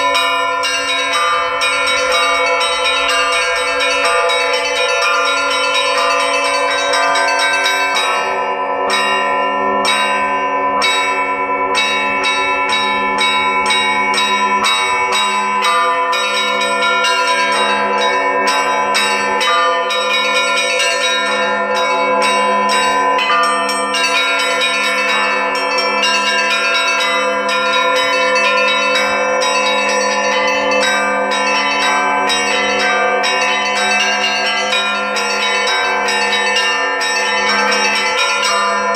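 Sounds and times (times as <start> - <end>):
deep bell ringing: 0.0 - 38.9
large bells humming: 0.0 - 38.9
small church bells ringing rapidly: 0.0 - 38.9.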